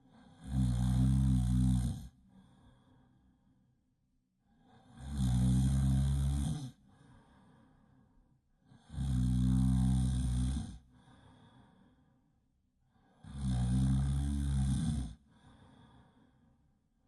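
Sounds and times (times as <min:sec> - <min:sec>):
loud snoring: 0:00.1 - 0:02.2, 0:04.6 - 0:06.8, 0:08.7 - 0:10.9, 0:13.2 - 0:15.2
soft breathing: 0:02.3 - 0:03.6, 0:06.8 - 0:08.2, 0:10.9 - 0:12.3, 0:15.3 - 0:16.6.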